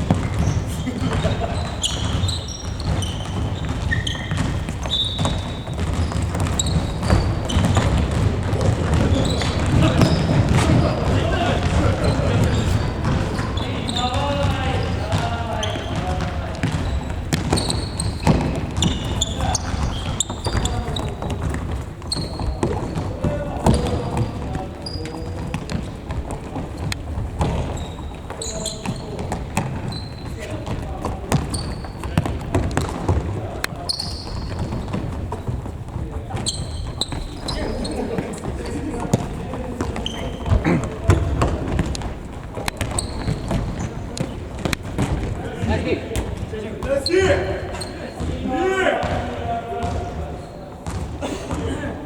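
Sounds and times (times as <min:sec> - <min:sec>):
players' voices: 0:00.0 - 0:52.0
sneakers squeaking on floor: 0:00.0 - 0:52.0
ball kicks and bounces: 0:14.4 - 0:24.6, 0:39.0 - 0:45.3.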